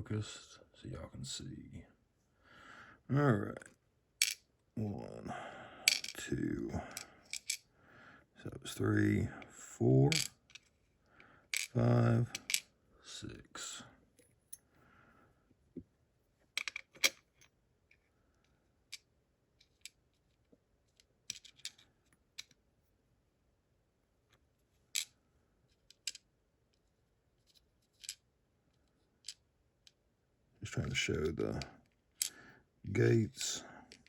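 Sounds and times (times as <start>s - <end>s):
small metal parts clicking: 5.9s - 6.2s, 7.0s - 7.6s, 11.5s - 12.6s, 16.6s - 17.2s.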